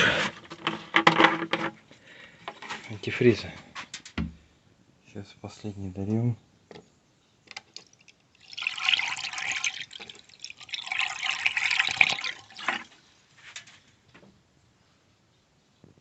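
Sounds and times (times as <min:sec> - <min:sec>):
liquid pouring from canister: 0:07.7 - 0:13.0.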